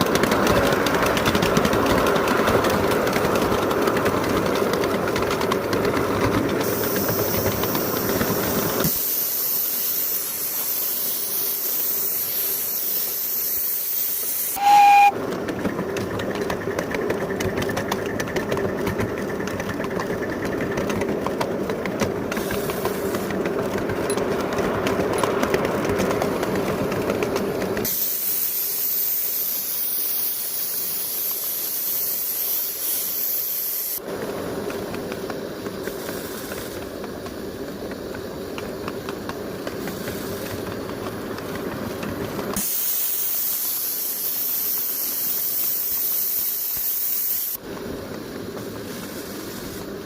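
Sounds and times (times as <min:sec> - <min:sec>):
steam locomotive running: 0:00.0 - 0:50.0
steam hissing: 0:06.5 - 0:15.1, 0:22.3 - 0:23.8, 0:27.7 - 0:50.0
steam whistle toot: 0:14.5 - 0:15.2.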